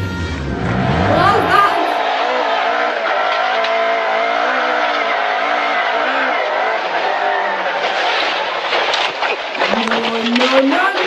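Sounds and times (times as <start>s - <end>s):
rally car engine revving: 0.0s - 7.9s
tyres on gravel: 6.3s - 11.0s.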